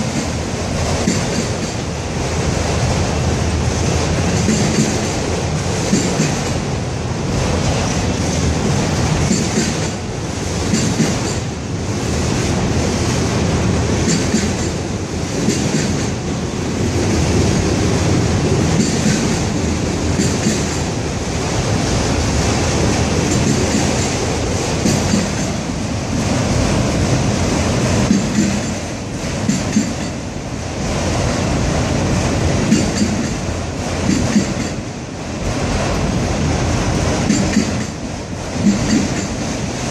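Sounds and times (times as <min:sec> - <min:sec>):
wheels clacking over rail joints: 0:00.0 - 0:02.0, 0:04.0 - 0:06.8, 0:07.7 - 0:11.6, 0:13.9 - 0:21.0, 0:22.8 - 0:30.4, 0:32.4 - 0:35.0, 0:36.9 - 0:39.9
train wheels rumbling on rail: 0:00.0 - 0:39.9.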